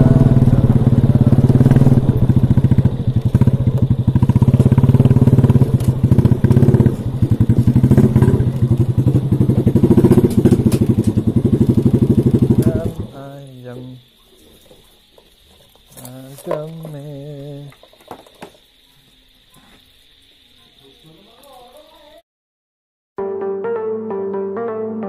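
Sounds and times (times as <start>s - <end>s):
small engine running: 0.0s - 13.3s.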